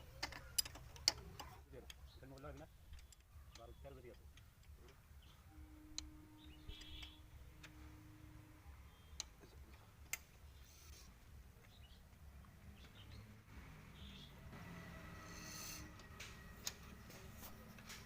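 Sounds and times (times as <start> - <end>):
metal tools clicking and tapping: 0.0 - 5.0.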